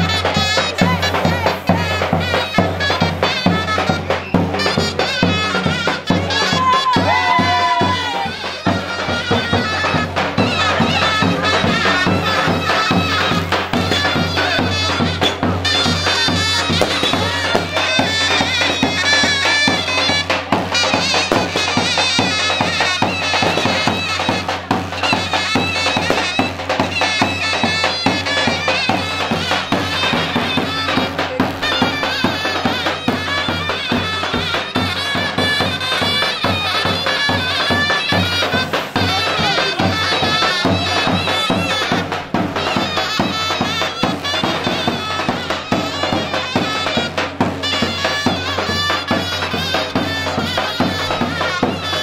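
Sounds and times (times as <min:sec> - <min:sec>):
even drum beat: 0:00.0 - 0:52.0
reed wind instrument melody: 0:00.0 - 0:52.0.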